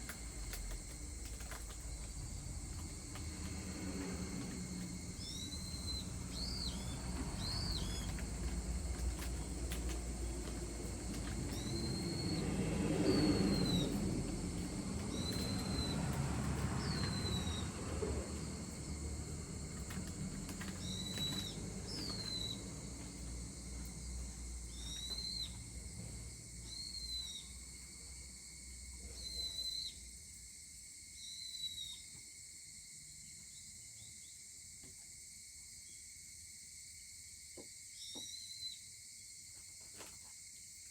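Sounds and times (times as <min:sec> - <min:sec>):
low rumble: 0:00.0 - 0:24.7
high insect drone: 0:00.0 - 0:40.9.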